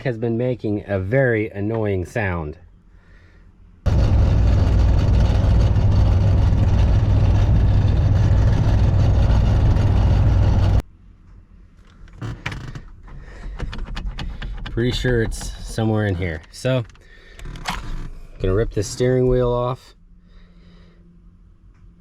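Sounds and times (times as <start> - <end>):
truck engine running: 3.9 - 10.8
light clicks and knocks: 11.2 - 17.9.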